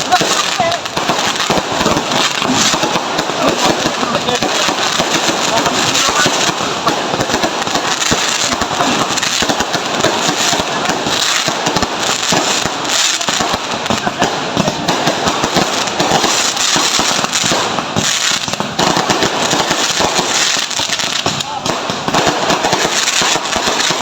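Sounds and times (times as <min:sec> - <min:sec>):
firecrackers crackling: 0:00.0 - 0:24.0.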